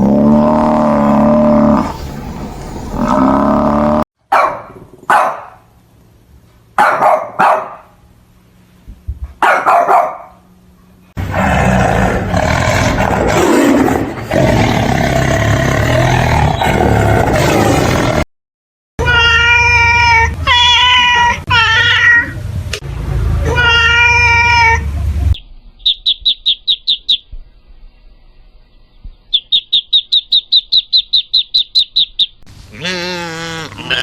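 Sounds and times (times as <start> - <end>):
dog barking: 4.3 - 5.7, 6.8 - 8.0, 9.4 - 10.4.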